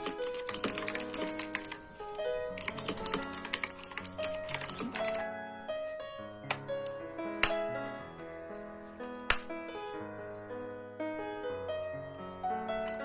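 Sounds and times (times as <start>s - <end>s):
mechanical keyboard typing: 0.0s - 1.8s, 2.6s - 5.3s, 12.8s - 13.0s
background music with melody: 0.0s - 13.0s.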